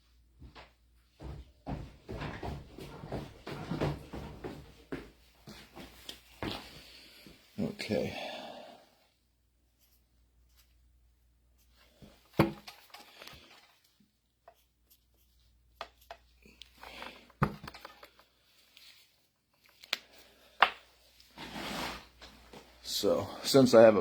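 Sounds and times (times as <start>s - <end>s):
scraping and rustling: 21.2s - 22.8s.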